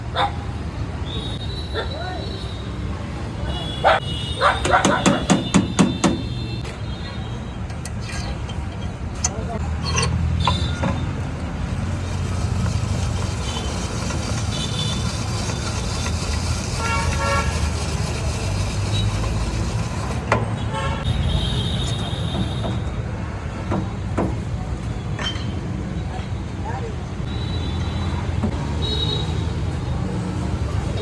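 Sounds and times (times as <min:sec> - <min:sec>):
traffic rumble: 0:00.0 - 0:31.0
vehicle horn honking: 0:20.6 - 0:22.8.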